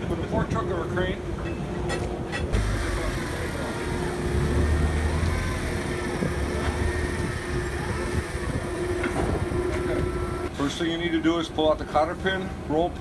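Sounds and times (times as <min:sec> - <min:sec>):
constant hum: 0:00.2 - 0:10.6
vehicle engine running: 0:02.6 - 0:10.5.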